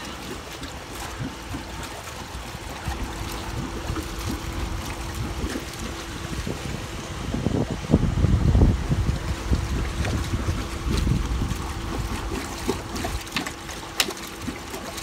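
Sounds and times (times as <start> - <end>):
steady hum: 0.0 - 15.0
water trickling and lapping: 0.0 - 15.0
low rumble: 2.7 - 13.3.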